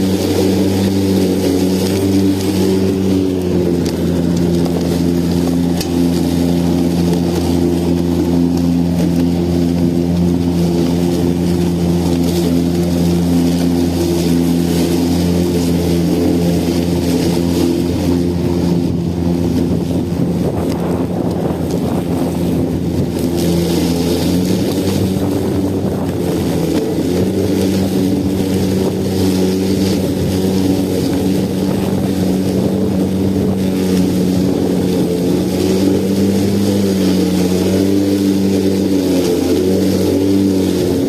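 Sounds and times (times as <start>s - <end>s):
lawn mower running: 0.0s - 41.0s.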